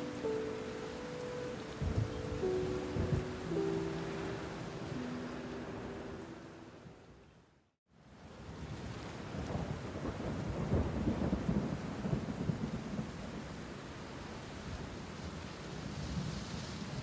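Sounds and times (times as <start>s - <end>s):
steady rain: 0.0s - 17.0s
rolling rumble of thunder: 8.8s - 13.5s.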